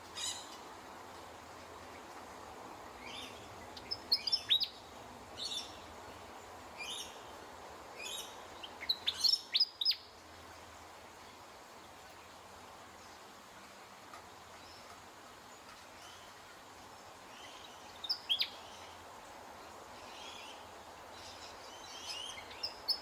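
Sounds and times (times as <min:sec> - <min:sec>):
soft bird chirps: 0:03.0 - 0:05.8, 0:17.3 - 0:19.0
bird whistled song: 0:03.8 - 0:04.8, 0:18.0 - 0:18.6.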